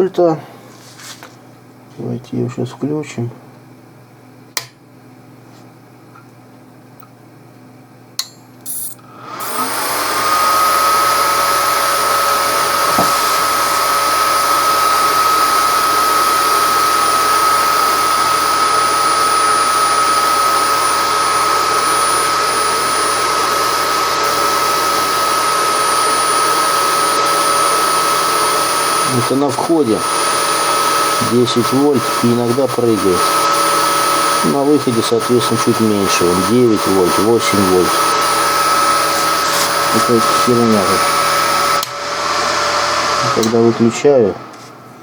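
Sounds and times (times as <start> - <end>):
cooling fan whirring: 0.0 - 45.0
switch clicks: 4.6 - 4.8, 8.2 - 8.4.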